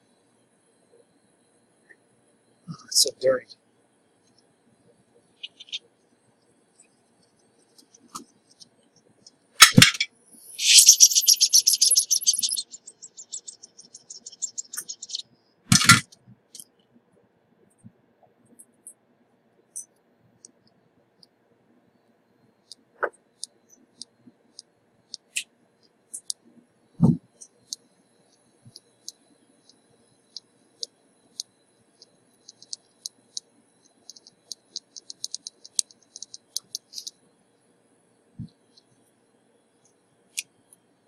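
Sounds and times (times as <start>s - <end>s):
small metal tools clicking: 7.8s - 16.7s, 26.2s - 26.4s, 30.3s - 37.2s.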